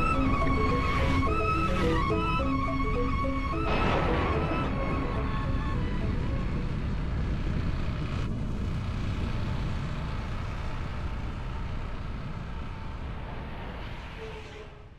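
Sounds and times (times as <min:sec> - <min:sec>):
vehicle rumble with road noise: 0:03.7 - 0:14.9.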